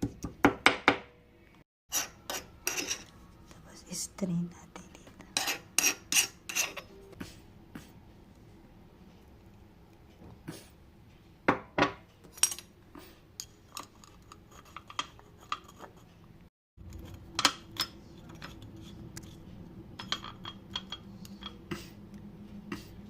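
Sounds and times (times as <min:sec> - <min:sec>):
utensils and dishes clinking: 0:01.9 - 0:03.1, 0:05.4 - 0:07.2, 0:11.6 - 0:12.8, 0:13.4 - 0:16.0, 0:16.8 - 0:21.7
low steady hum: 0:02.3 - 0:05.6.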